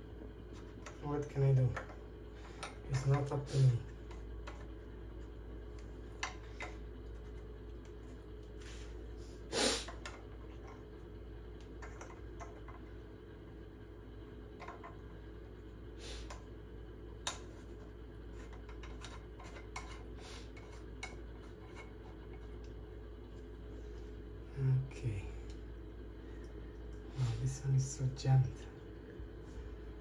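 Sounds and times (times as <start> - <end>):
low hum: 0.0 - 30.0
plumbing parts clicking and knocking: 11.6 - 13.0.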